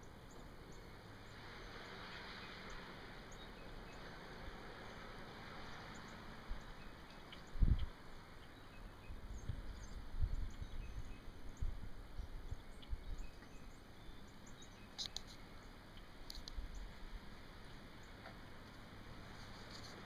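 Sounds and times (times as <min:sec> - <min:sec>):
faint bird chirps: 0:00.0 - 0:04.2, 0:04.8 - 0:17.0
wind buffeting microphone: 0:05.7 - 0:13.4
sharp ticks: 0:14.9 - 0:16.8.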